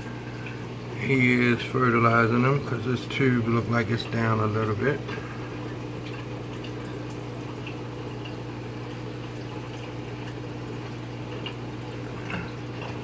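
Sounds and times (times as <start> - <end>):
faint drip-like ticks: 0.0 - 1.0, 5.0 - 13.0
aquarium pump humming: 0.0 - 13.0
water trickling and bubbling: 0.0 - 13.0.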